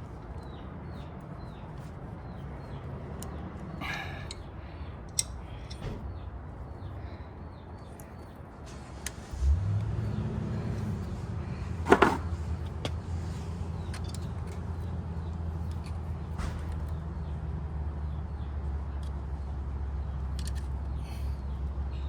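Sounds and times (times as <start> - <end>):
faint birds chirping: 0.0 - 9.4, 10.0 - 22.0
clicks and knocks of hand work: 11.8 - 13.0, 13.8 - 14.9, 20.3 - 21.0.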